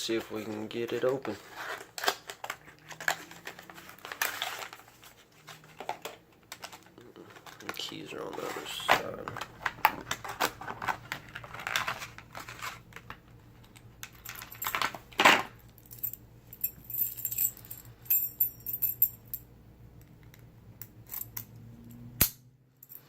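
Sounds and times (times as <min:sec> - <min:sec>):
keys jingling: 0:15.8 - 0:19.4.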